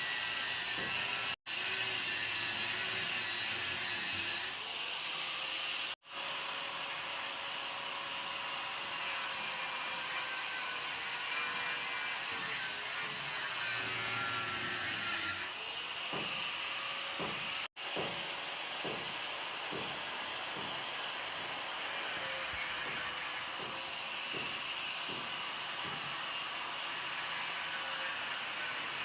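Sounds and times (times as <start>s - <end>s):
angle grinder cutting metal rod: 0.0s - 5.6s, 8.7s - 17.7s, 20.6s - 29.0s.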